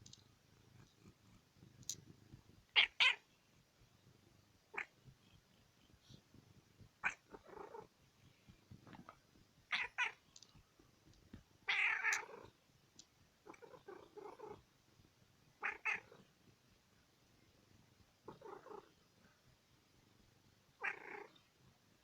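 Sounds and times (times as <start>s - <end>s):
cat calling: 2.7s - 3.2s, 9.7s - 10.2s.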